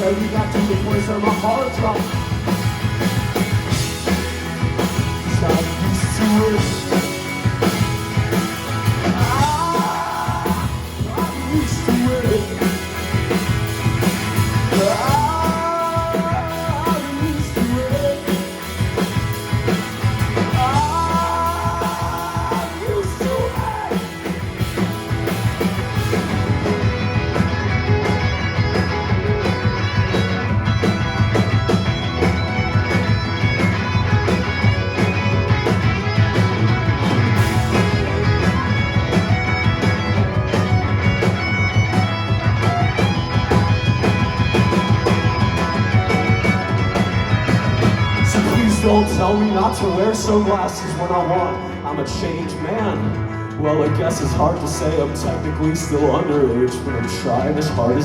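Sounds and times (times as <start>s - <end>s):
live rock band playing: 0.0s - 58.0s.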